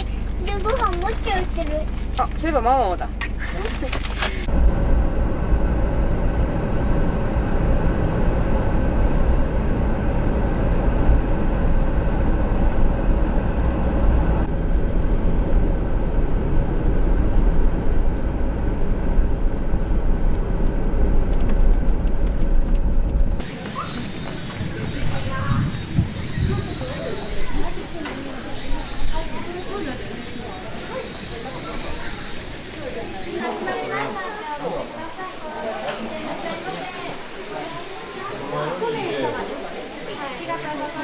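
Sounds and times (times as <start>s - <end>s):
vehicle low rumble: 0.0s - 41.0s
faint steady tones: 23.4s - 41.0s.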